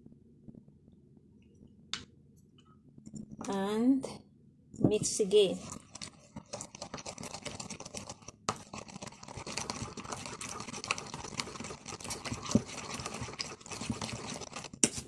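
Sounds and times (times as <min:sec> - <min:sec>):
wet scraping of stirred paste: 0:05.2 - 0:15.0.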